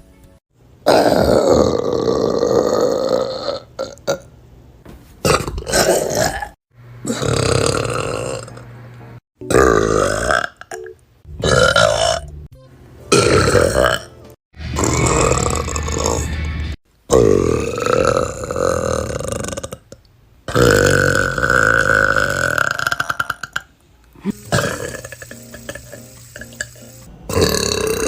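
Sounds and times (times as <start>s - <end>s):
women burping: 20.5s - 25.8s.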